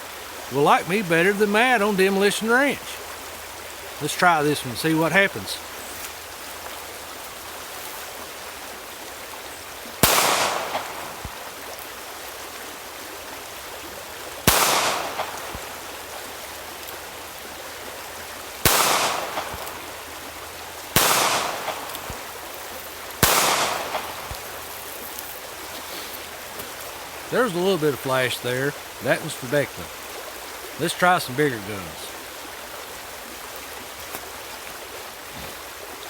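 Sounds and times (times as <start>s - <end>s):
steady background hiss: 0.0s - 36.0s
gunshots with echo: 23.2s - 24.2s.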